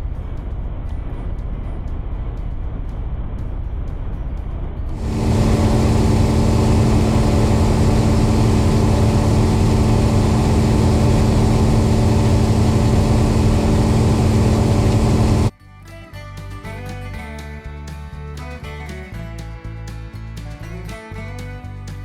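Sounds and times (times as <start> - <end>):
farm machinery engine running: 5.0 - 15.5.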